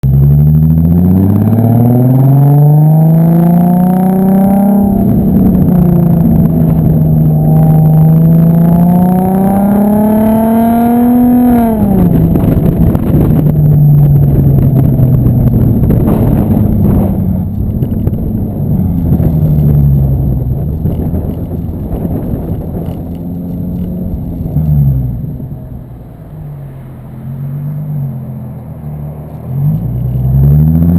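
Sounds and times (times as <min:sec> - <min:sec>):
loud car engine revving: 0:00.0 - 0:30.9.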